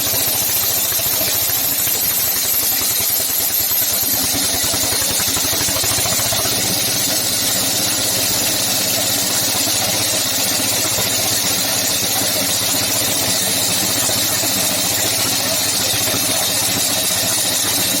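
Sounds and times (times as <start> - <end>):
concrete cutter engine running: 0.0 - 18.0.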